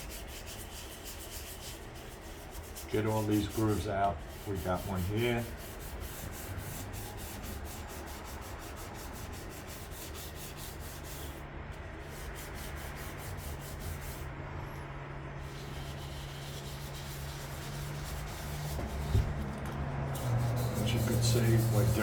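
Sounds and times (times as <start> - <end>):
sandpaper rubbing by hand: 0.0 - 11.4, 12.0 - 14.3, 15.4 - 22.0.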